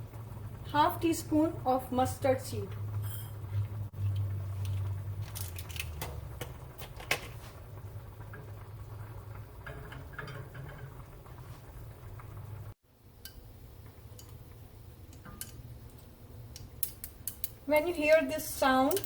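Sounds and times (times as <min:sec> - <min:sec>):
seeds crackling in oil: 0:04.0 - 0:09.6, 0:13.2 - 0:19.0.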